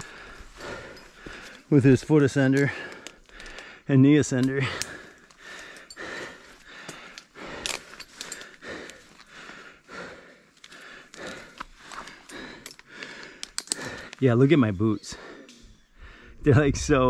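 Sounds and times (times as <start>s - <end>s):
person breathing hard: 0.0s - 1.8s, 2.6s - 3.9s, 4.6s - 14.2s, 15.0s - 16.4s
light clicks and rustles: 4.3s - 9.3s, 10.5s - 14.2s.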